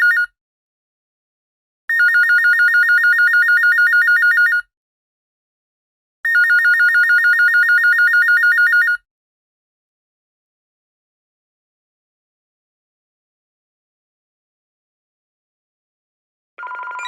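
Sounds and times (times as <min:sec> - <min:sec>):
telephone ringing two-tone warble: 0:16.6 - 0:17.0.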